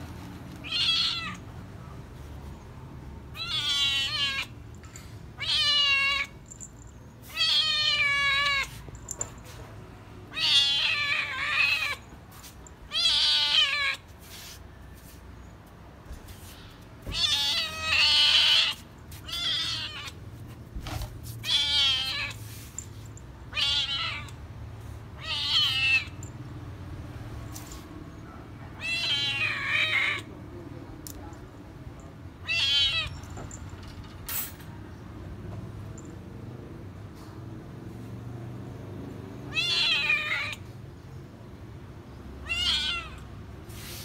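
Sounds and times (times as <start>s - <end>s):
cat meowing: 0.6s - 1.5s, 3.3s - 4.6s, 5.3s - 6.4s, 7.2s - 8.8s, 10.3s - 12.2s, 12.9s - 14.1s, 17.0s - 20.2s, 21.3s - 22.5s, 23.5s - 24.4s, 25.2s - 26.3s, 28.3s - 30.3s, 32.4s - 33.3s, 39.5s - 40.7s, 42.4s - 43.3s.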